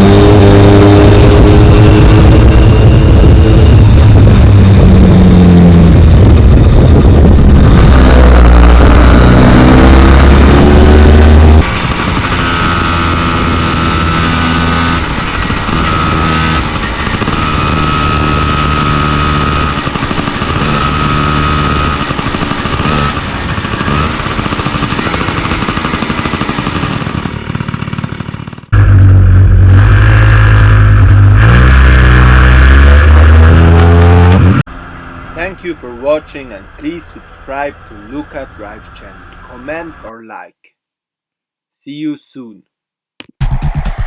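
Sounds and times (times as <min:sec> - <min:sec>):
deeper engine running: 0:00.0 - 0:40.1
scooter engine running: 0:08.1 - 0:28.9.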